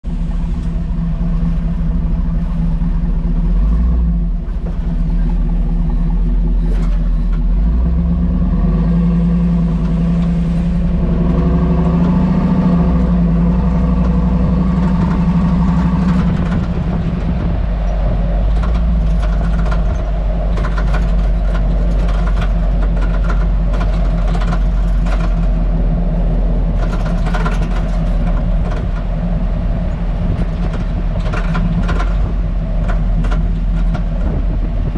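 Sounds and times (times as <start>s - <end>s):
truck engine and drivetrain drone: 0.0s - 34.9s
sharp clicks and rattles: 11.0s - 34.9s.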